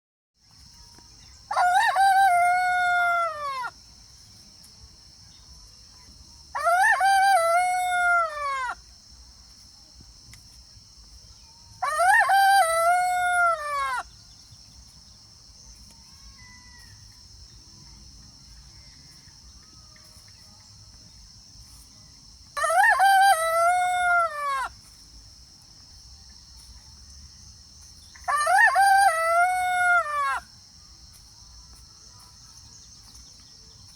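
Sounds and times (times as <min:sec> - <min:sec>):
rooster crowing: 0:01.5 - 0:03.7, 0:06.5 - 0:08.8, 0:11.8 - 0:14.1, 0:22.6 - 0:24.8, 0:28.2 - 0:30.5
steady high hiss: 0:07.2 - 0:11.8, 0:12.5 - 0:28.3.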